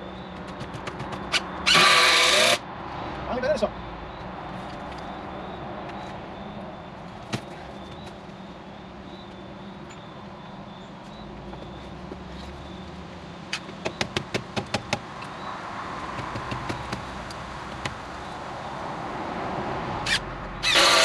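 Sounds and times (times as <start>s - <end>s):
loud power tool burst: 1.7s - 2.6s, 20.6s - 21.0s.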